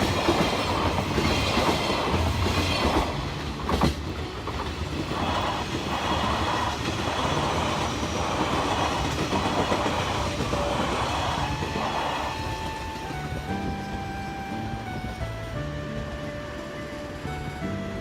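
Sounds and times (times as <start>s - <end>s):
train wheels clattering over rail joints: 0.0s - 13.2s.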